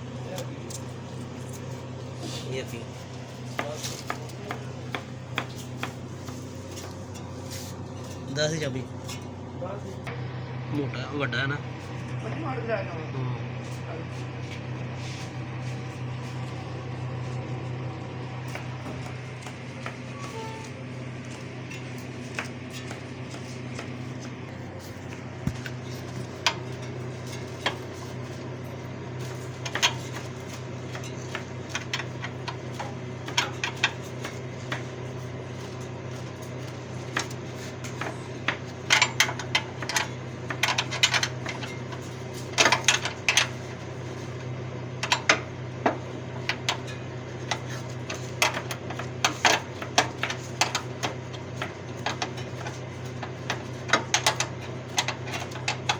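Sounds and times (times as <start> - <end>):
steady low hum: 0.0 - 55.9
hand tools clinking on metal: 0.3 - 9.4, 25.0 - 44.4, 45.0 - 55.9.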